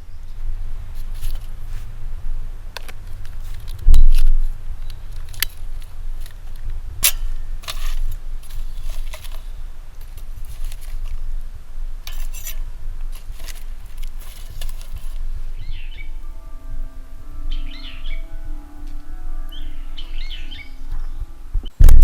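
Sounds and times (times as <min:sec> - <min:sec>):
metal objects clinking: 0:00.9 - 0:01.9, 0:02.8 - 0:11.3, 0:12.0 - 0:16.4.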